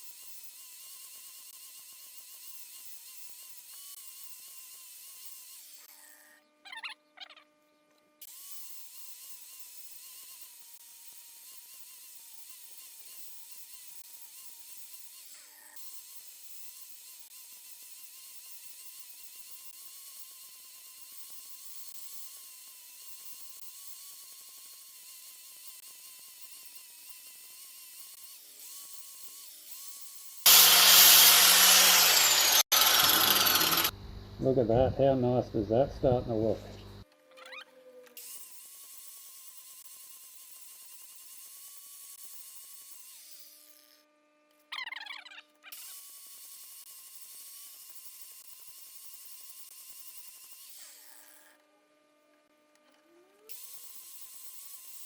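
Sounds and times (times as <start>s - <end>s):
angle grinder grinding wood: 7.5s - 34.0s
angle grinder whining: 30.4s - 34.0s.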